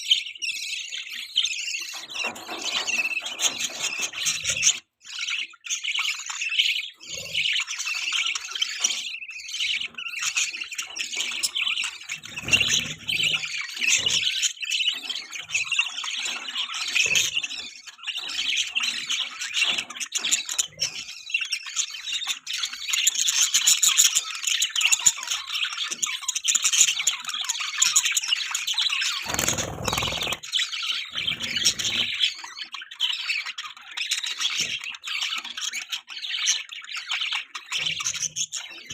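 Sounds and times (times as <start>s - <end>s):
budgerigars chirping: 29.3s - 30.4s, 31.1s - 32.8s.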